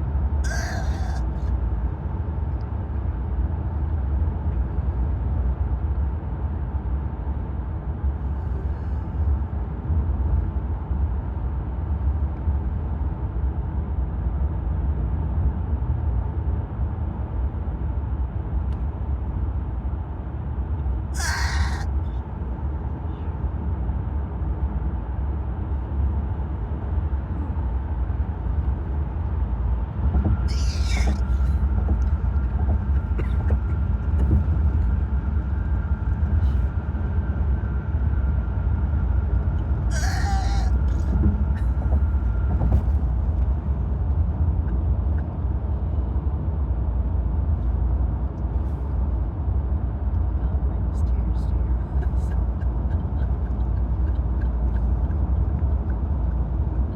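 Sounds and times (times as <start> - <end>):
road and engine rumble in car: 0.0 - 56.9
person hiccuping: 0.5 - 1.2, 30.5 - 31.4, 39.9 - 41.7.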